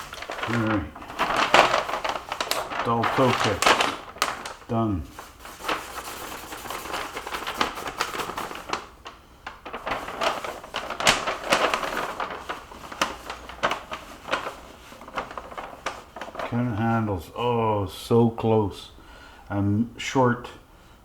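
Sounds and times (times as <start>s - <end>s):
packaging rustling: 0.0s - 17.0s.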